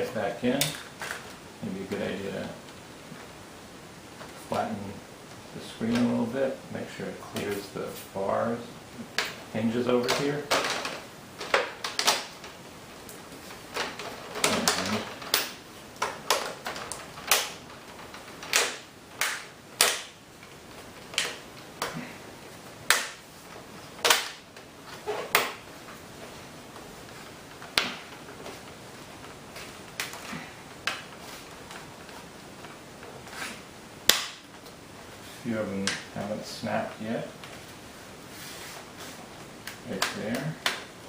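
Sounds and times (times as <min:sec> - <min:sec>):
plastic clips snapping into place: 0:13.8 - 0:17.6, 0:18.4 - 0:20.2, 0:24.0 - 0:24.4.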